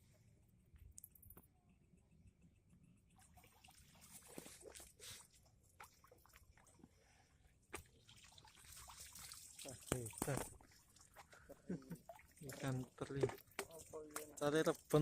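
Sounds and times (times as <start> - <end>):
faint small clicks and rustles: 0.0 - 7.0.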